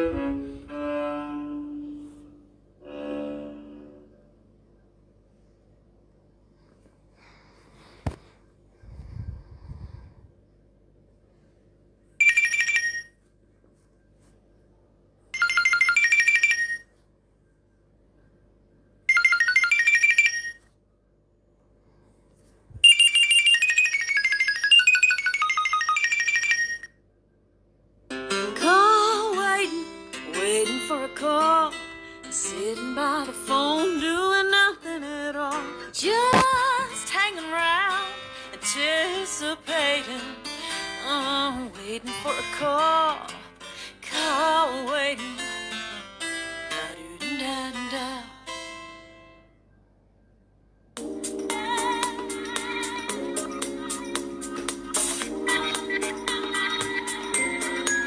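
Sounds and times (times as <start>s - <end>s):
electronic phone ringtone: 12.2s - 13.2s, 15.4s - 17.0s, 19.1s - 20.7s, 22.8s - 27.0s, 55.5s - 58.0s
guitar: 28.1s - 49.4s
woman singing: 28.4s - 45.5s, 46.7s - 48.4s, 54.9s - 57.9s.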